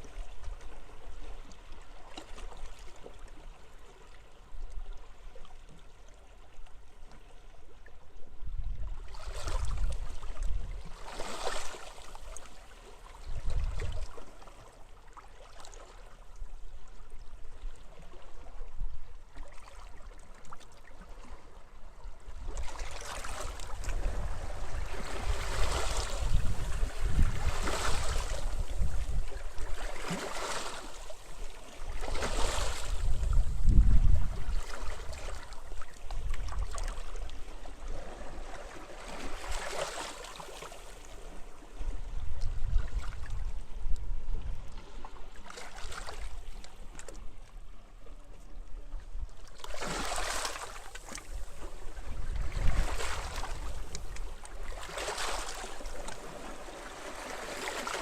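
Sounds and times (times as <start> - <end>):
wind rumbling on microphone: 8.3 - 11.0, 13.2 - 14.2, 22.3 - 30.0, 31.8 - 38.5, 41.2 - 45.3, 51.2 - 56.4
waves washing onto beach: 22.7 - 35.9.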